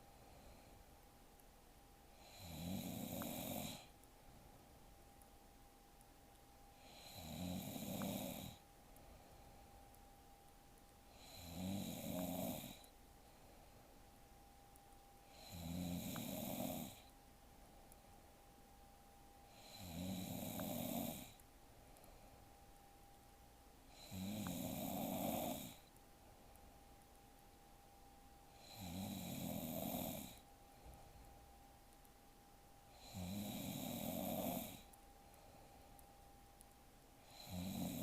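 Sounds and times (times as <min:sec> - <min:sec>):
woman snoring: 0:02.2 - 0:03.9, 0:06.8 - 0:08.6, 0:11.1 - 0:12.9, 0:15.3 - 0:17.1, 0:19.5 - 0:21.4, 0:23.9 - 0:25.9, 0:28.6 - 0:30.4, 0:32.9 - 0:34.9, 0:37.2 - 0:38.0.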